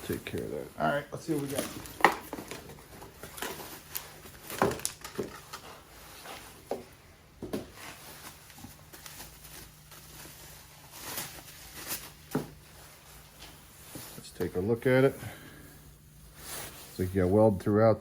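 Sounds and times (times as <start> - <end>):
soft rustling: 0.0 - 17.8.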